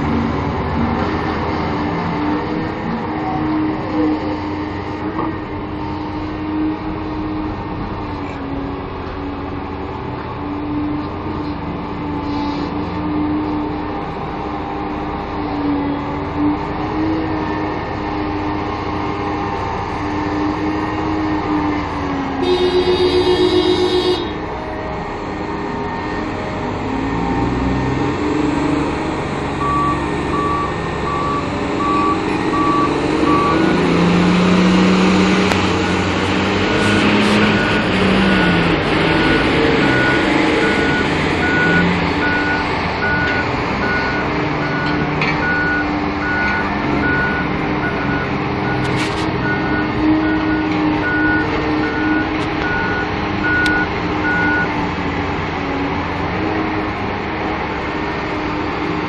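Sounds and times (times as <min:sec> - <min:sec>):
heavy diesel engines under load: 0:00.0 - 0:59.0
reversing alarm beeping: 0:22.4 - 0:24.8, 0:29.6 - 0:34.2, 0:36.7 - 0:54.7.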